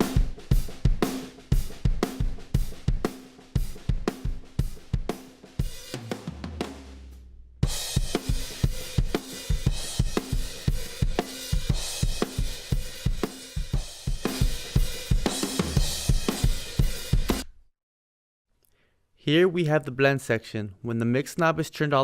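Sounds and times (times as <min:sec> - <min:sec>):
drum kit beat: 0:00.0 - 0:17.5.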